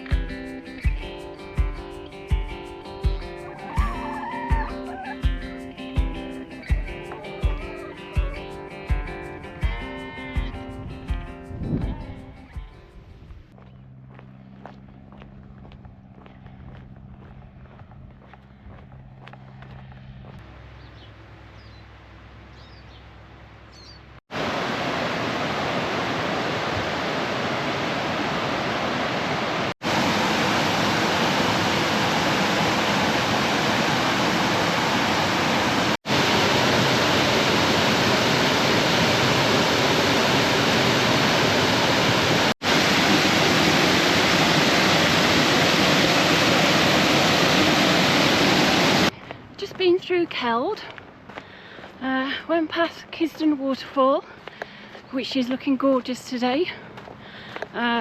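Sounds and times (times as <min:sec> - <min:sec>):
waterfall rushing: 0:03.4 - 0:05.4, 0:24.3 - 0:49.1.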